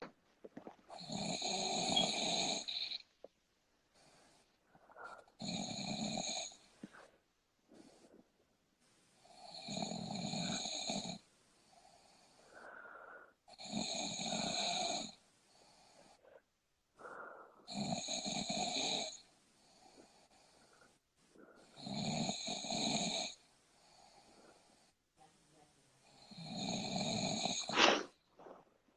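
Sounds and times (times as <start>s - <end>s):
soft breaths: 0.0s - 28.9s
person snoring: 0.9s - 3.0s, 5.0s - 7.1s, 9.3s - 11.2s, 11.9s - 15.2s, 17.0s - 19.2s, 21.6s - 23.4s, 26.1s - 28.2s.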